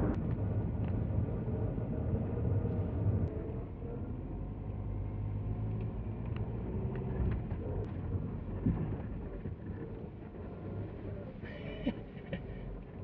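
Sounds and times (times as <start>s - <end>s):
car engine and road rumble: 0.0s - 13.0s
faint light ticks: 5.7s - 7.4s.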